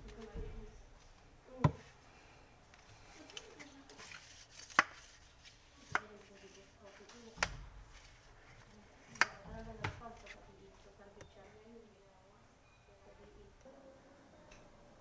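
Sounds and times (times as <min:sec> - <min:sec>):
hard objects knocking: 0:01.6 - 0:02.0.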